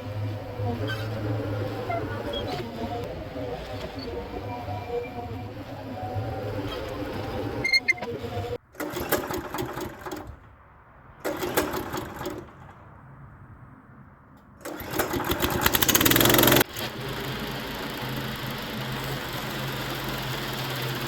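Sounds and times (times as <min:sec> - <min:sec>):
small gasoline engine running: 0:14.6 - 0:21.0.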